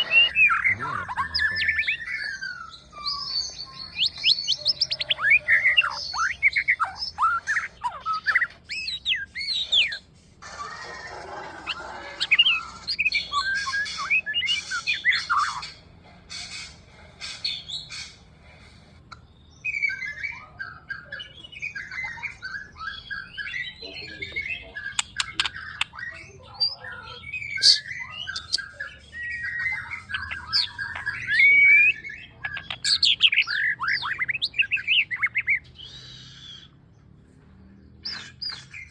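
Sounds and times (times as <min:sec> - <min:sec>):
bird singing whistles and chatter: 0:00.0 - 0:15.8, 0:19.5 - 0:36.8.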